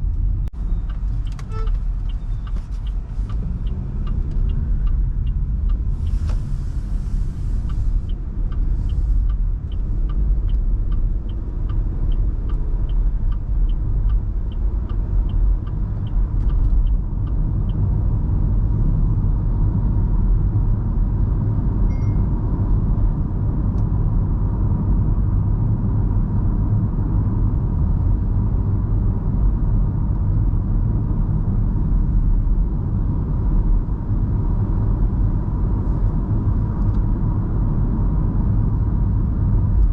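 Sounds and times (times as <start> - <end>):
turn indicator ticking: 0.0 - 6.2, 7.5 - 19.2
road and engine rumble: 0.0 - 39.9.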